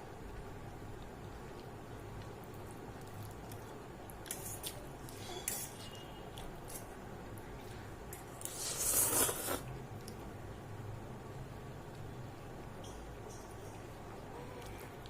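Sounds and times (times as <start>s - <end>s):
light eating clicks: 0.2s - 4.9s.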